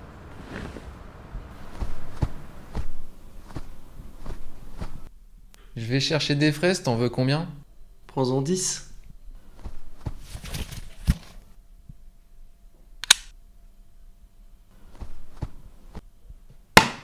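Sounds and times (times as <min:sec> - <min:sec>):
rustles: 0:00.1 - 0:05.1, 0:09.3 - 0:11.6
sharp high click: 0:13.0 - 0:13.3.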